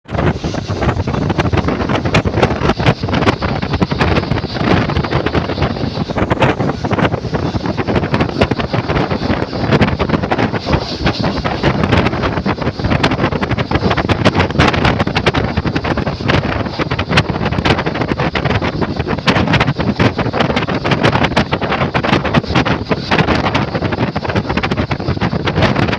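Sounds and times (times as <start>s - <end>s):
wind buffeting microphone: 0.0s - 25.9s
passenger train running: 0.3s - 14.3s.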